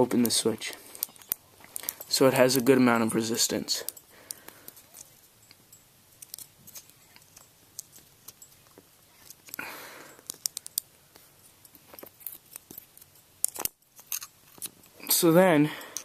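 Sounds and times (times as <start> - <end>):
small clicks and taps: 10.2 - 13.8.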